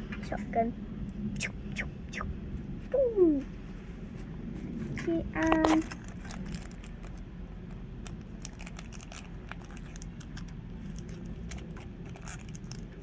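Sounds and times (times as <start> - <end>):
plastic packaging crinkling: 5.4 - 13.0.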